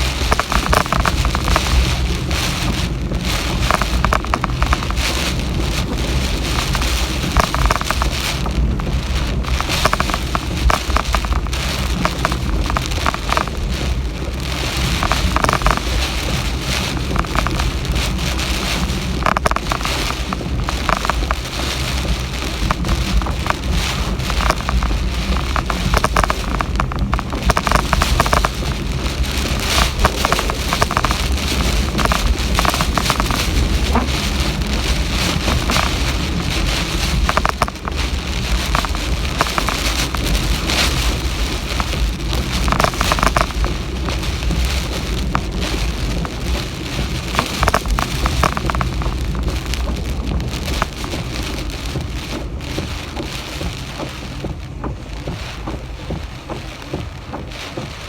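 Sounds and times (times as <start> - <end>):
heavy rain pouring: 0.0 - 58.0
low rumble: 0.0 - 58.0.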